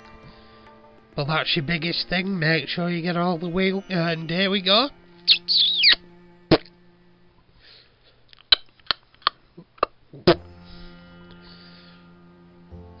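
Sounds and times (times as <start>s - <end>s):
bench vice squeak: 4.3s - 6.0s.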